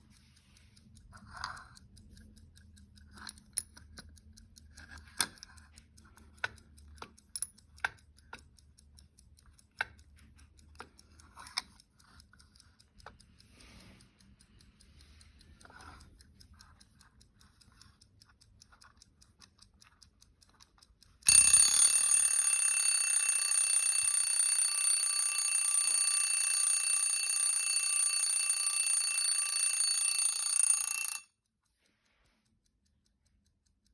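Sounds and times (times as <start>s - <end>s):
alarm clock ticking: 0.0s - 31.8s
alarm bell ringing: 21.3s - 31.3s.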